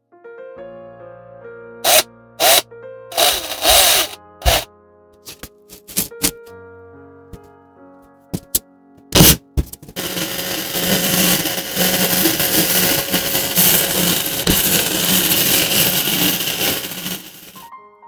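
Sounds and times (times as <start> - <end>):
small electric motor running: 1.8 - 4.7, 10.0 - 17.6.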